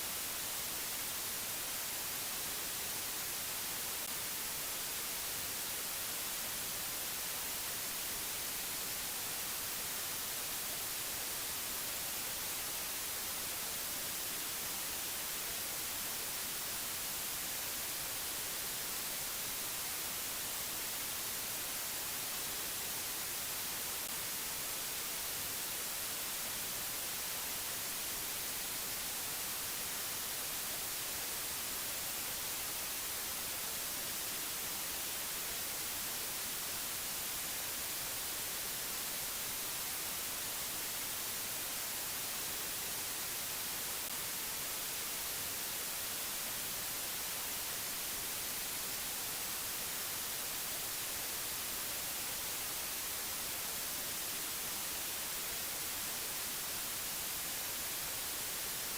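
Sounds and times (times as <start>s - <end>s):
white noise hiss: 0.0s - 58.9s.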